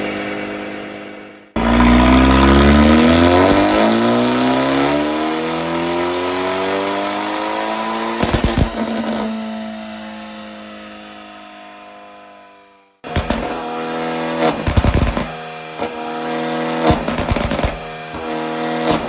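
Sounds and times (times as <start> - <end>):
car engine revving: 1.6 - 12.1, 13.0 - 19.0
exhaust pops and crackles: 8.2 - 9.3, 13.1 - 13.8, 14.4 - 15.9, 16.8 - 19.0.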